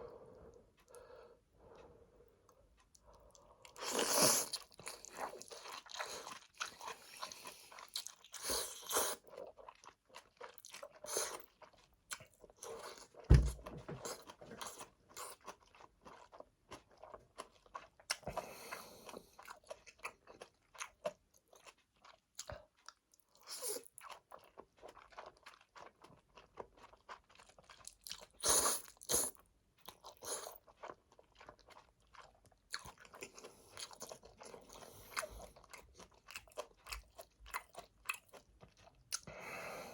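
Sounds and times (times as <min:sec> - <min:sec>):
wet chewing: 0:02.5 - 0:39.3
sharp thump: 0:13.3 - 0:14.2.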